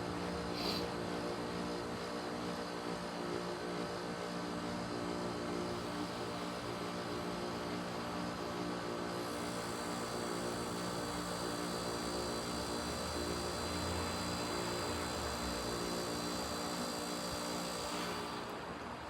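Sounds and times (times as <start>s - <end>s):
heat pump compressor hum: 0.0s - 19.0s.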